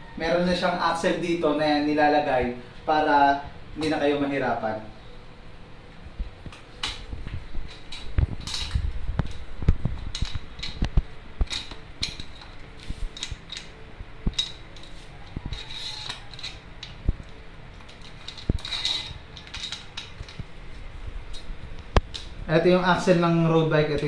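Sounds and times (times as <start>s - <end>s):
metal parts clicking and clinking: 6.5s - 9.4s, 10.0s - 20.5s.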